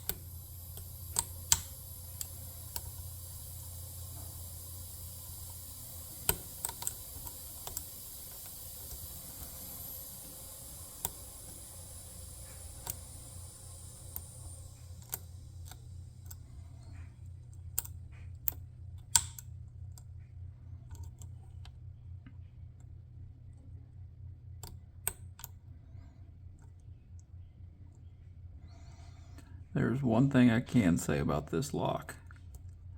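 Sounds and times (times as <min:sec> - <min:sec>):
high hiss: 0:00.0 - 0:17.2
steady low hum: 0:00.0 - 0:32.9.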